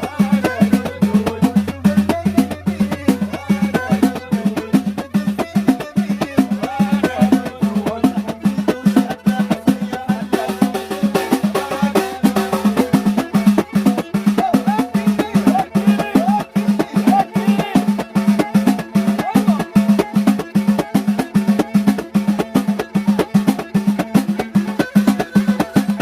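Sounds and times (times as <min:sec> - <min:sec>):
fast hand-drum percussion: 0:00.0 - 0:26.0.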